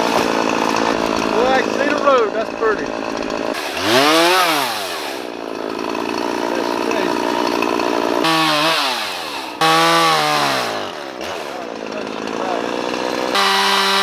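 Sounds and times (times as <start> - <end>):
chainsaw revving: 0.0 - 14.0.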